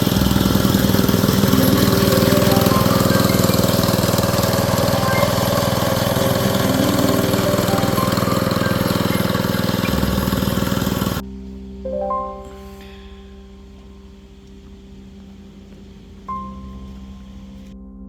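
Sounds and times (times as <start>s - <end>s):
construction machine engine running: 0.0s - 11.3s
quiet music with sustained notes: 0.0s - 18.0s.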